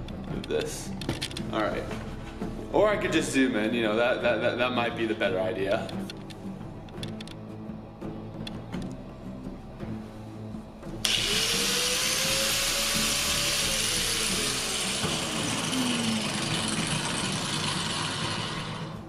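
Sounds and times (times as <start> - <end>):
background music: 0.0 - 19.0
angle grinder cutting: 11.0 - 19.0.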